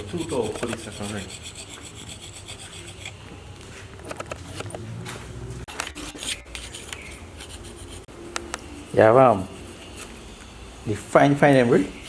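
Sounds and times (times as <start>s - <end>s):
file scraping on metal: 0.0s - 3.2s, 5.8s - 12.0s.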